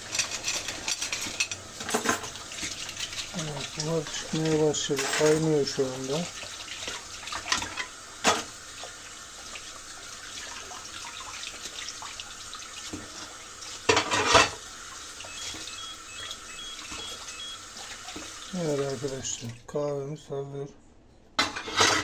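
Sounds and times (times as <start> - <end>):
coffee machine hissing and bubbling: 0.0 - 19.9
short high beeps: 15.2 - 17.6.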